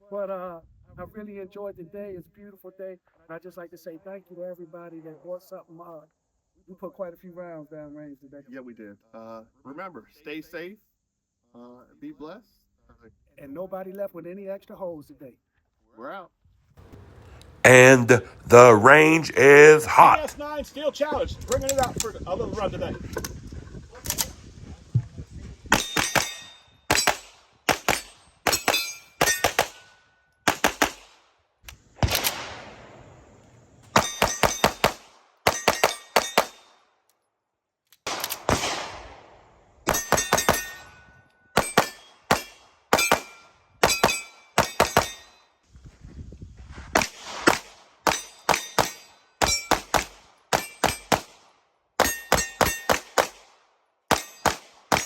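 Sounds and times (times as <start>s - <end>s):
pistol shots: 25.7s - 29.9s, 30.5s - 31.2s, 34.0s - 36.7s, 38.1s - 39.3s, 41.6s - 45.3s, 47.0s - 51.4s, 54.1s - 55.0s.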